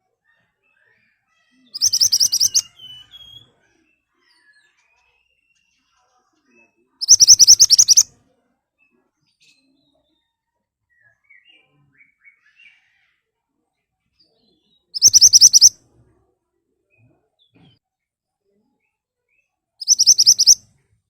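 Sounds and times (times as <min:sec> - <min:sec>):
faint bird chirps: 0:00.2 - 0:13.3, 0:14.2 - 0:15.8, 0:18.5 - 0:20.9
songbird rapid high notes: 0:15.0 - 0:15.7, 0:19.8 - 0:20.6.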